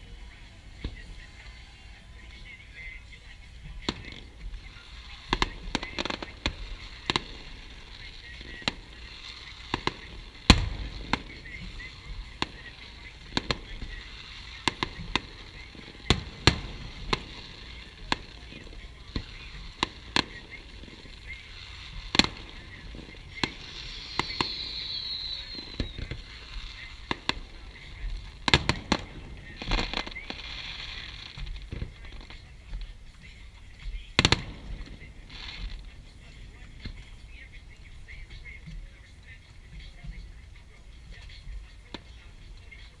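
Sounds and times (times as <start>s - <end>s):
fireworks bursting with sharp bangs: 0.0s - 43.0s
falling firework whistle: 3.9s - 31.9s.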